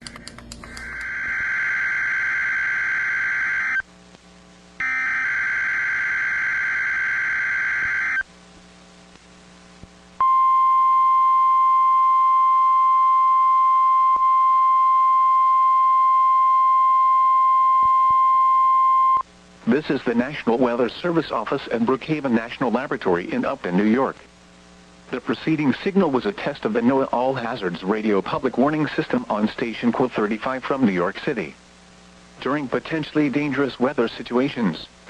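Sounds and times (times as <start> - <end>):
steady warning alarm tone: 0.8 - 3.8, 4.8 - 8.2
warbling digital data tones: 0.9 - 3.8, 4.8 - 8.2.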